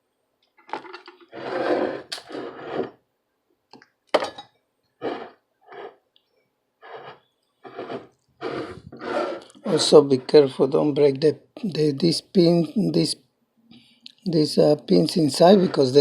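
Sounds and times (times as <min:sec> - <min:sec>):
scraping and rustling: 0:00.7 - 0:03.0, 0:06.8 - 0:10.6, 0:14.9 - 0:16.0.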